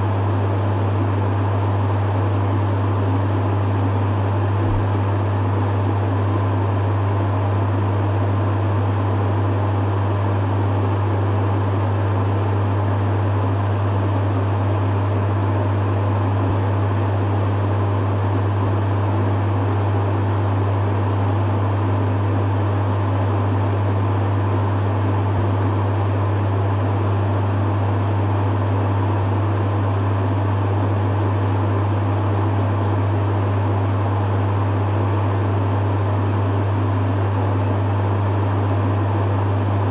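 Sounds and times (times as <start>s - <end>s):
dehumidifier low hum: 0.0s - 39.9s
fan air rushing: 2.7s - 6.8s.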